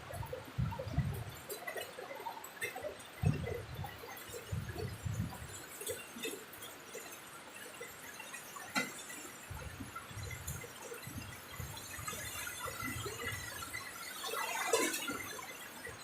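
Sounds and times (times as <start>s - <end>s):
wind gusts rumbling: 0.0s - 1.5s, 3.2s - 5.7s
rain falling: 0.0s - 16.0s
drips and taps: 0.1s - 16.0s.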